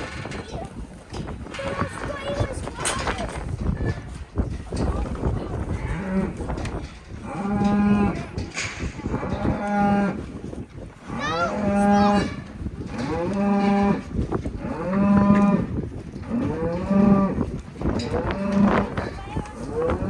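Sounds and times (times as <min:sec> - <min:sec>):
cattle mooing: 0:07.2 - 0:08.3, 0:11.1 - 0:20.0.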